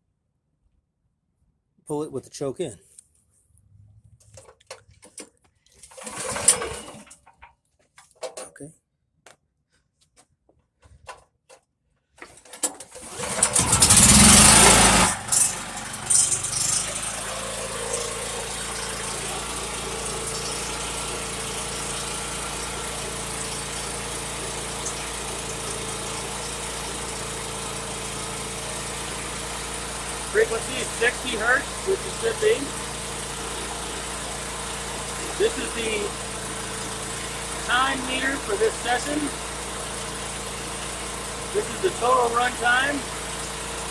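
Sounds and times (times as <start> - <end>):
recoil rope pull-start: 5.8 - 7.2, 12.6 - 43.9
generator engine running: 5.9 - 7.2, 13.0 - 43.9.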